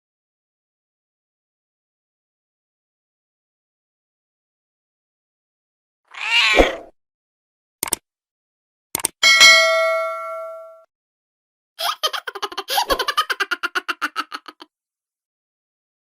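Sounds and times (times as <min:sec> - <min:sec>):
cat meowing: 0:06.1 - 0:06.9
short clicks: 0:07.8 - 0:08.0, 0:08.9 - 0:09.2
bell-like ding: 0:09.2 - 0:10.9.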